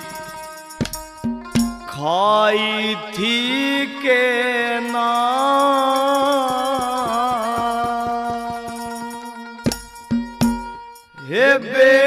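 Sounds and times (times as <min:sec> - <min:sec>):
quick percussion strokes: 0:00.0 - 0:02.0, 0:05.2 - 0:10.8
loud drum beats: 0:00.8 - 0:01.9, 0:06.6 - 0:09.0, 0:09.7 - 0:10.8
man singing: 0:01.8 - 0:09.5, 0:11.2 - 0:12.0.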